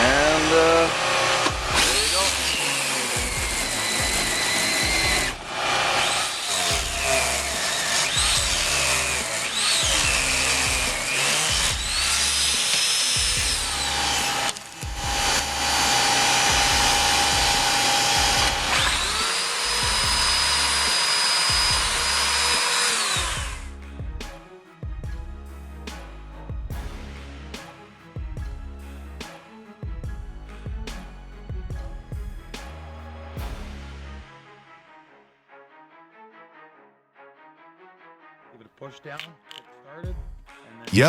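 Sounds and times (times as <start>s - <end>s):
background music with bass beat: 0.0s - 5.4s, 6.7s - 22.6s, 23.2s - 34.3s
power tool motor spinning: 0.0s - 23.6s.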